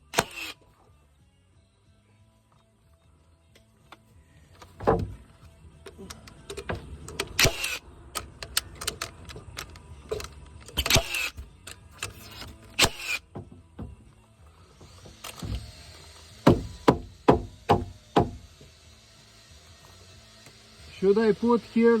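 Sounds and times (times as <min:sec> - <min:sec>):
heavy thud: 0:04.8 - 0:05.2
lumber and tools knocking: 0:04.8 - 0:05.3, 0:13.3 - 0:14.1, 0:16.4 - 0:18.4.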